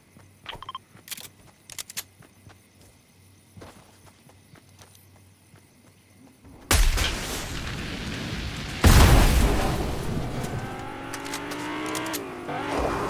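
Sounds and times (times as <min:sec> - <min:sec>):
explosion booms: 0:06.7 - 0:10.7.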